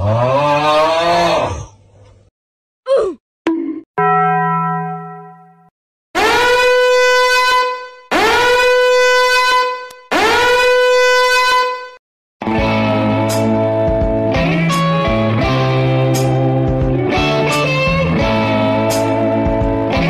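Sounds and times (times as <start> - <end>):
loud horn blasts: 6.2 - 12.0.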